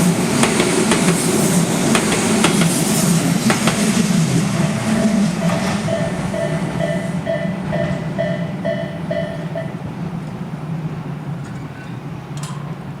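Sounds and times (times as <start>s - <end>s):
low rumble of train: 0.0s - 13.0s
level crossing warning bell: 4.9s - 10.0s.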